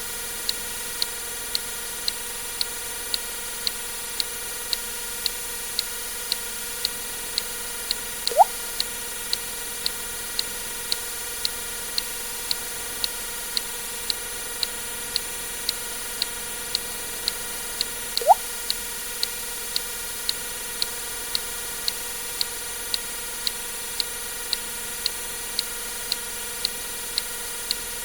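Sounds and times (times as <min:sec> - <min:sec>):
steady ticking: 0:08.3 - 0:08.5, 0:18.2 - 0:18.4
water drip plops: 0:08.3 - 0:08.5, 0:18.2 - 0:18.4.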